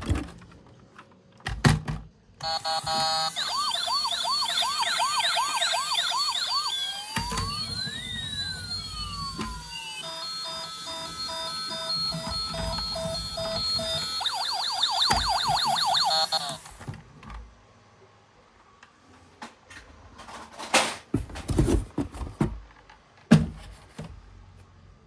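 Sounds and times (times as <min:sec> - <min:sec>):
toy electronic siren: 0:02.4 - 0:16.8.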